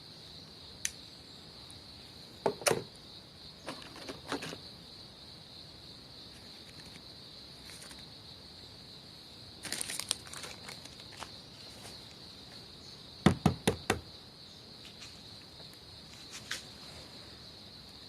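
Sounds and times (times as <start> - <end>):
soft rustles and clicks: 14.8 - 17.1.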